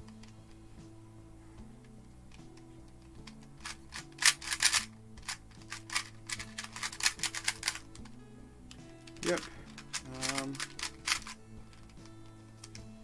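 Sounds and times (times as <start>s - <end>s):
quiet background music: 0.0s - 13.0s
speed cube clicking: 2.3s - 8.1s, 8.8s - 12.9s.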